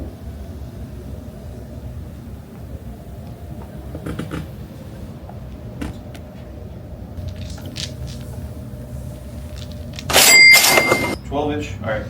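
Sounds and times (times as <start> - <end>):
faint hum: 0.0 - 12.0.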